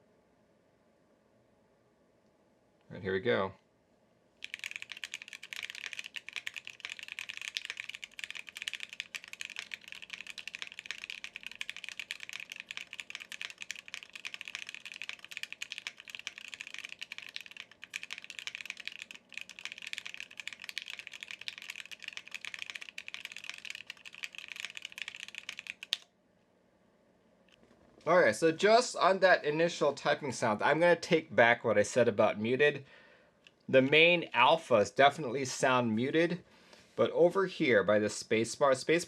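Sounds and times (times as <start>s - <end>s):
fast mechanical keyboard typing: 4.4s - 26.0s.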